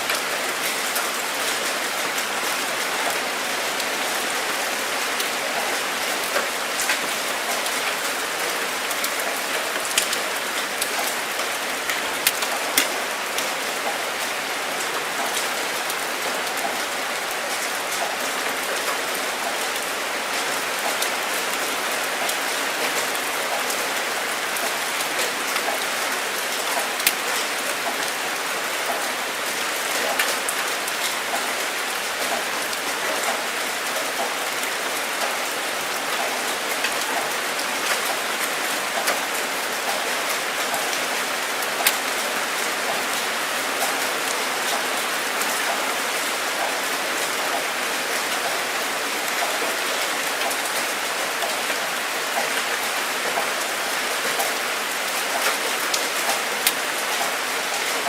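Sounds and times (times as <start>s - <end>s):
steady rain hiss: 0.0s - 58.0s
single raindrops ticking: 6.2s - 13.5s.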